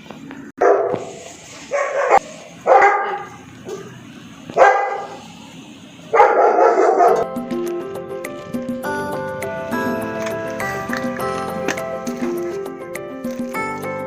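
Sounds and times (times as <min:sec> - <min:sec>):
dog barking: 0:00.6 - 0:05.3, 0:06.1 - 0:07.2
background music: 0:07.2 - 0:14.0.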